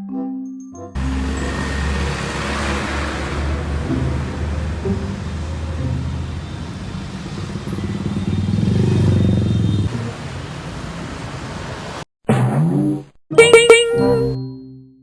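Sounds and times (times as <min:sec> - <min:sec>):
vehicle engine running: 0:01.0 - 0:12.0.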